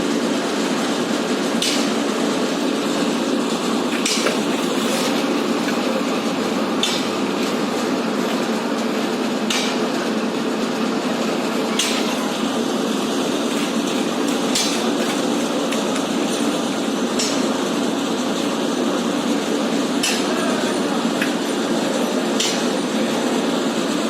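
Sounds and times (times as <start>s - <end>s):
engine drone: 0.0s - 24.0s.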